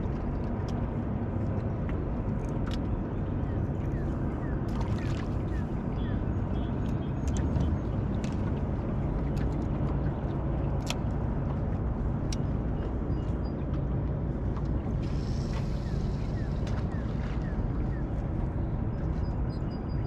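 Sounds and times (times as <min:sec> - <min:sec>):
boat motor droning: 0:00.0 - 0:20.0
light clicks and taps: 0:10.7 - 0:13.0.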